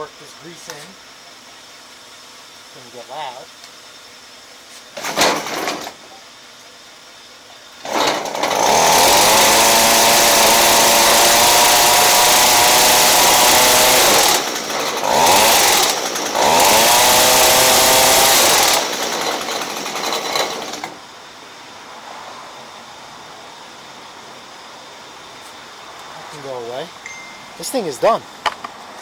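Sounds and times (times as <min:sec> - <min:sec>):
hedge trimmer engine revving: 0:07.8 - 0:21.0.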